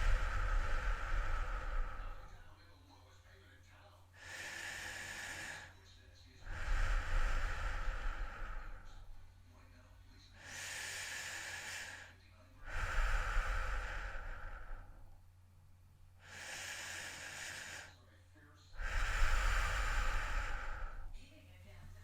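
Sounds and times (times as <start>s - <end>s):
person breathing heavily: 0.0s - 2.6s, 4.2s - 9.3s, 10.3s - 15.2s, 16.2s - 18.1s, 18.8s - 21.2s
air rumble on microphone: 0.0s - 2.7s, 6.1s - 10.2s, 18.8s - 21.3s.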